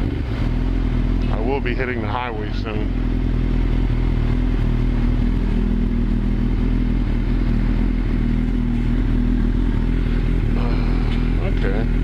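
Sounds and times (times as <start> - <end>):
wind and road noise: 0.0 - 1.6
motorcycle engine running: 0.0 - 12.0.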